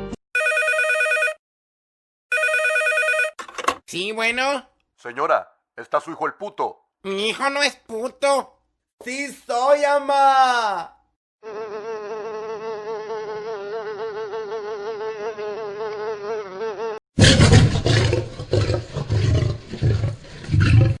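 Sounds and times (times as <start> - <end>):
housefly buzzing: 11.4 - 17.0
lion roaring: 17.2 - 21.0.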